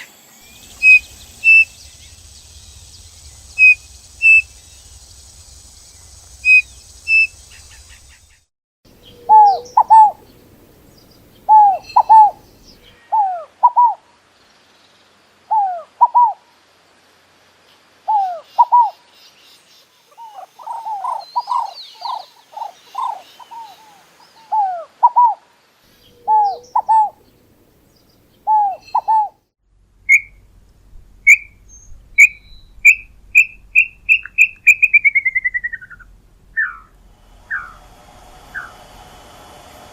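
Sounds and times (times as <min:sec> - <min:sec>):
bird downward-sweeping notes: 0:00.0 - 0:08.2, 0:09.0 - 0:13.0, 0:32.2 - 0:39.9
short high bird chirps: 0:00.0 - 0:08.3, 0:31.3 - 0:37.8, 0:38.5 - 0:38.8.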